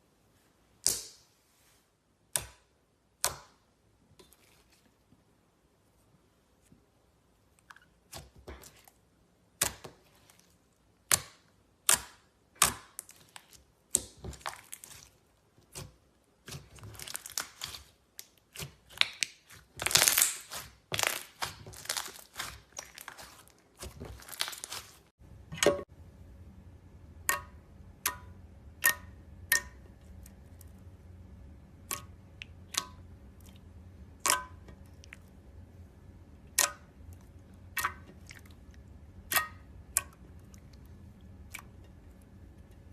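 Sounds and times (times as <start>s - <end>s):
faint steady hum: 0.0s - 42.9s
slime popping and crackling: 16.4s - 25.1s.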